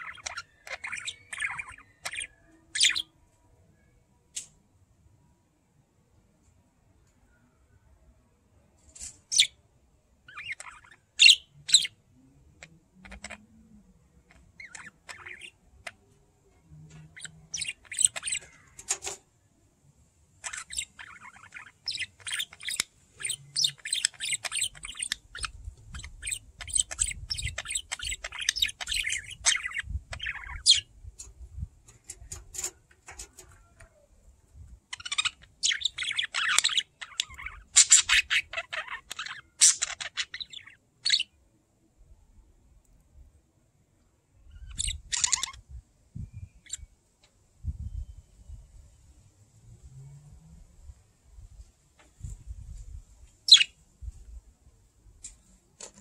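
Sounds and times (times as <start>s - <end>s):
budgerigars chirping and chattering: 0.0s - 3.1s, 10.3s - 12.0s, 12.6s - 13.4s, 14.3s - 16.0s, 16.9s - 19.2s, 20.4s - 31.3s, 34.9s - 41.3s, 44.5s - 45.6s, 53.5s - 53.8s.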